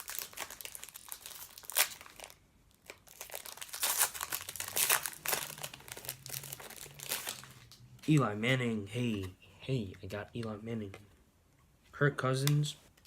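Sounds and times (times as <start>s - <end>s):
plastic wrapper crinkling: 0.0s - 7.8s.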